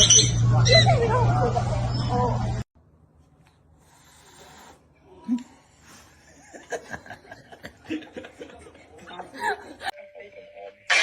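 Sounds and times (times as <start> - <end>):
person chuckling: 9.3 - 9.9.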